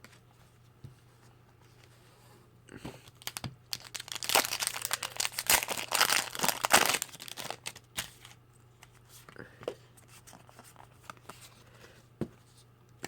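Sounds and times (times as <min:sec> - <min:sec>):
foil wrapper crinkling: 0:03.1 - 0:08.4.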